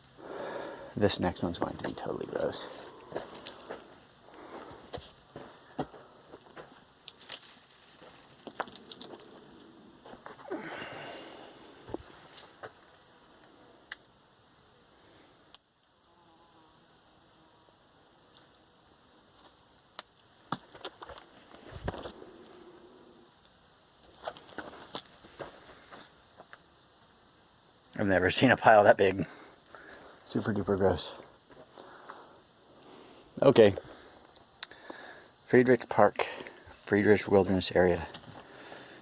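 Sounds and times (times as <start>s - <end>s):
high-pitched insect chorus: 0.0s - 39.0s
faint rustles: 20.8s - 22.9s.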